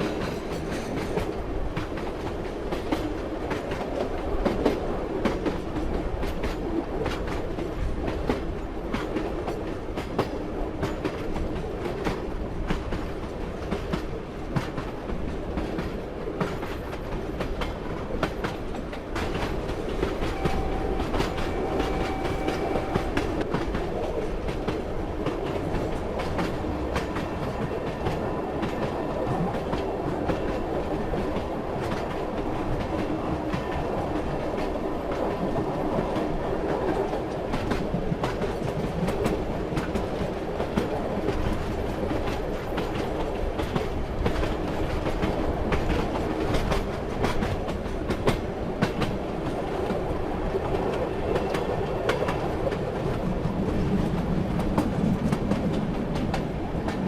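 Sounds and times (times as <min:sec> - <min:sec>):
train rumbling on rails: 0:00.0 - 0:57.0
faint high tone: 0:20.3 - 0:23.2.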